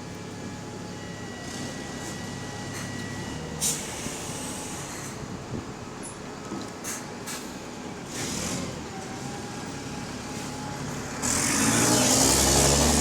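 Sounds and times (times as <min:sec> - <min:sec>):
bus diesel engine: 0:00.0 - 0:13.0
air brake hiss: 0:03.6 - 0:05.2.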